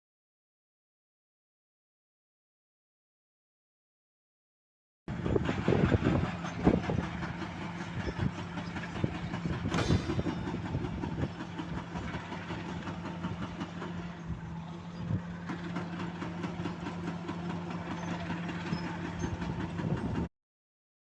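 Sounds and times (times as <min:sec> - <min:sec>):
engine humming: 0:05.1 - 0:20.3
sharp metallic clank: 0:09.6 - 0:10.7.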